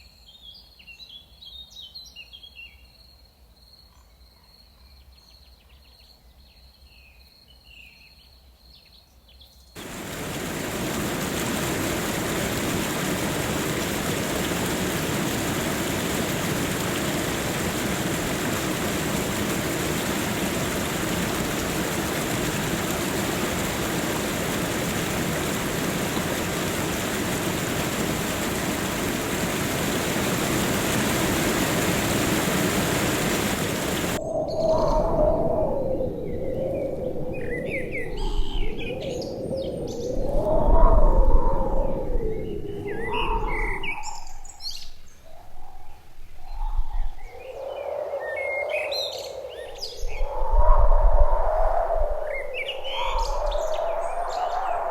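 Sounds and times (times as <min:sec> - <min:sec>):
rushing waterfall: 0:09.8 - 0:34.3, 0:52.2 - 0:54.9.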